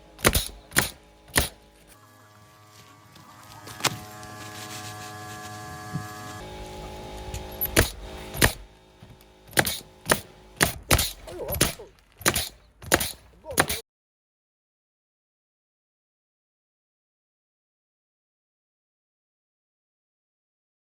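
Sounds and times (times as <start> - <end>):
pneumatic nailer shots: 0.0 - 2.0, 3.6 - 13.8
steady background tone: 0.0 - 13.8.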